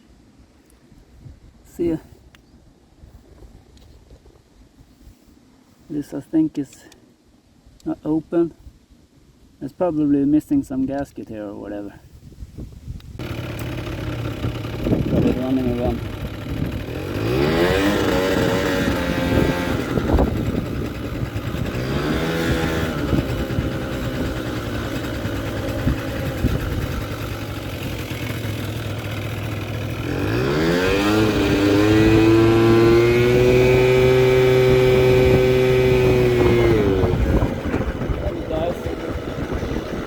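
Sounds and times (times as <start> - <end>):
scooter engine revving: 13.2 - 40.0.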